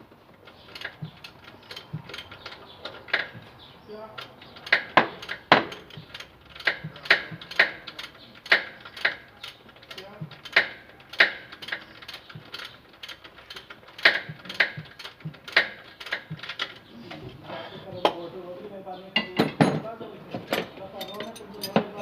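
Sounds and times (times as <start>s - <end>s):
ratchet wrench clicking: 0.7s - 3.3s, 4.5s - 16.8s.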